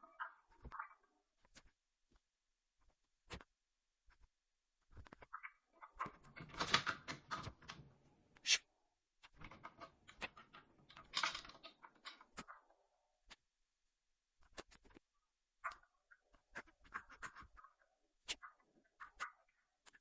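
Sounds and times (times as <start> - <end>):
clicking and rattling of pull station: 6.2 - 7.9.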